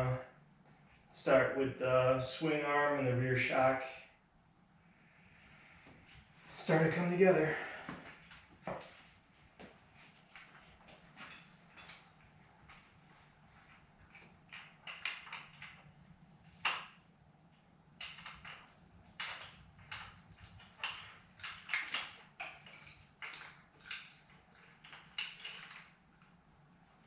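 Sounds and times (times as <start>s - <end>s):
tools and parts clicking and knocking: 11.1s - 12.8s, 18.0s - 22.8s.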